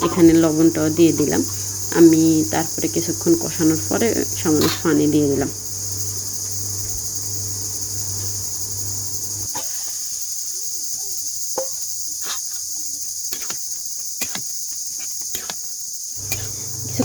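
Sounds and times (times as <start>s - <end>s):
low hum: 0.0s - 9.5s
crickets trilling: 0.0s - 17.0s.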